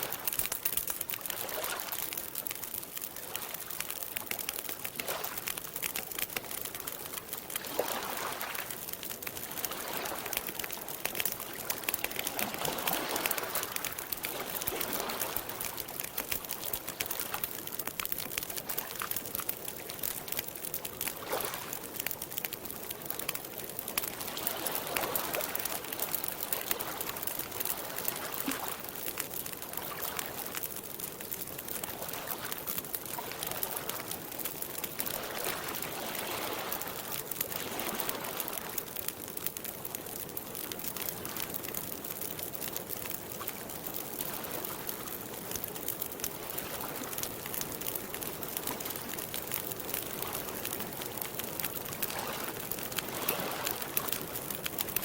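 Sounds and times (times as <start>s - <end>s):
campfire crackling and popping: 0.0s - 55.0s
lake water lapping: 7.5s - 8.6s, 9.4s - 17.6s, 35.0s - 38.7s, 51.9s - 54.4s.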